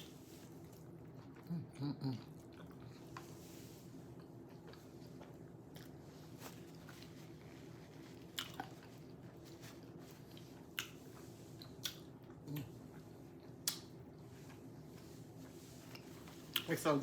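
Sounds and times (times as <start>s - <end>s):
person chewing food: 0.0s - 16.7s
sharp mouth smacks: 13.6s - 13.9s.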